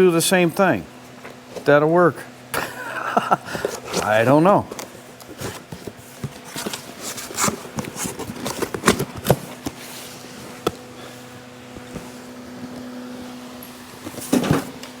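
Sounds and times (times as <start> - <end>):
shop fan humming: 0.0 - 15.0
boxes and packaging rustling: 3.2 - 12.9.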